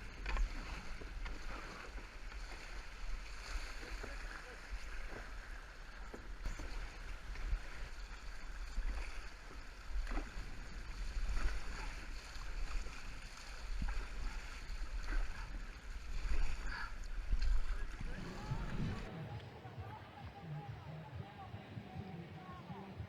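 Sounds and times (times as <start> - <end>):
paddles pulling through water: 0.0 - 23.0
wind on microphone: 6.3 - 23.0.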